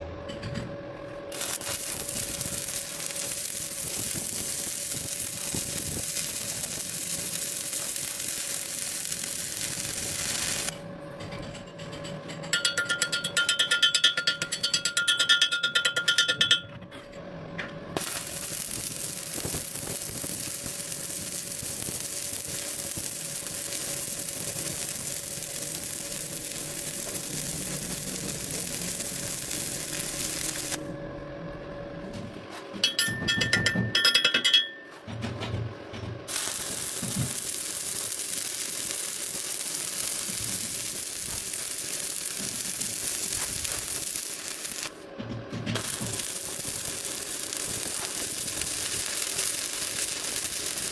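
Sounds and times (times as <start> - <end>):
arc welding crackling hiss: 1.3 - 10.8, 18.0 - 30.8, 36.3 - 45.0, 45.8 - 50.9.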